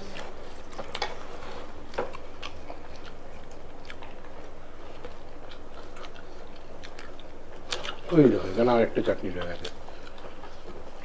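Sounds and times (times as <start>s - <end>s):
people chewing food: 0.0s - 11.0s
wet mouth clicks and smacks: 0.2s - 8.1s.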